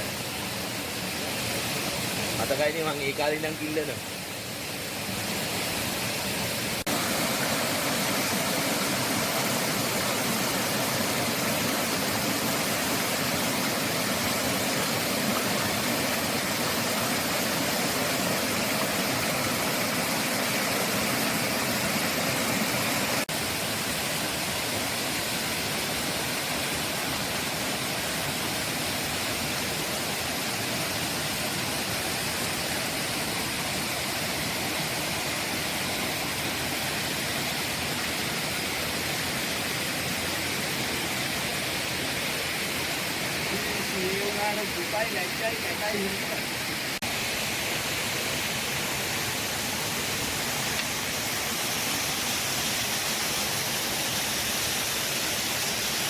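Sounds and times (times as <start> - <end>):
stream water rushing: 0.0 - 56.0.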